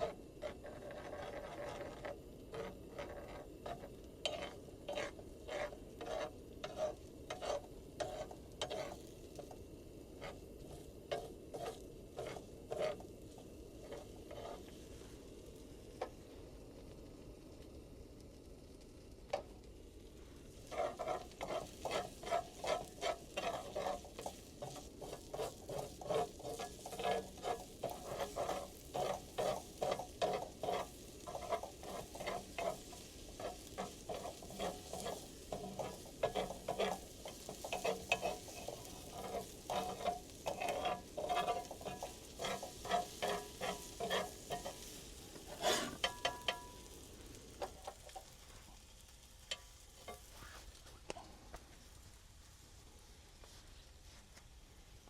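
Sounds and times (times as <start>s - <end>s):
rhythmic scraping strokes: 0.0s - 9.6s, 10.2s - 15.1s, 20.6s - 46.8s.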